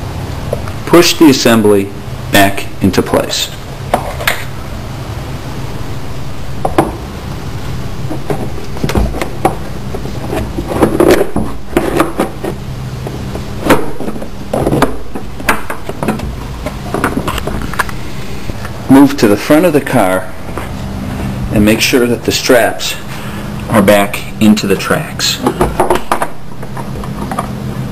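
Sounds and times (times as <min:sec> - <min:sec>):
steady low hum: 0:00.0 - 0:27.9
knocks clicks and scrapes: 0:08.0 - 0:18.8, 0:25.4 - 0:27.6.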